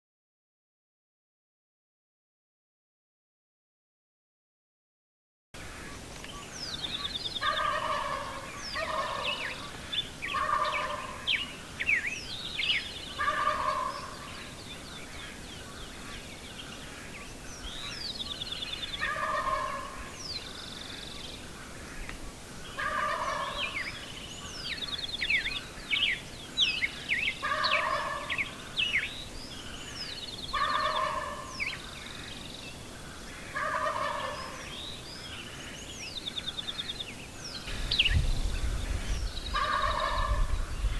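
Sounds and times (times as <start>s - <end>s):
songbirds chirping and trilling: 5.6s - 40.9s
turkeys gobbling: 7.4s - 11.3s, 13.2s - 14.4s, 19.0s - 20.1s, 22.8s - 24.0s, 27.4s - 28.6s, 30.5s - 31.9s, 33.5s - 34.8s, 39.6s - 40.5s.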